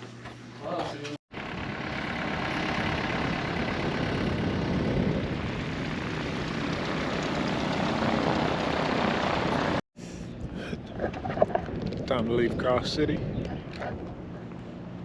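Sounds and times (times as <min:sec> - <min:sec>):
propeller airplane engine running: 0:01.3 - 0:12.2.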